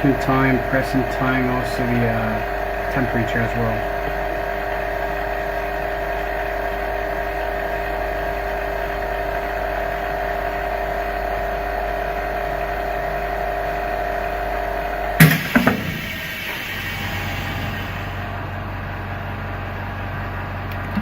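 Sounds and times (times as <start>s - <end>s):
laminating machine humming: 0.0s - 21.0s
sudden loud burst of noise: 15.2s - 18.8s.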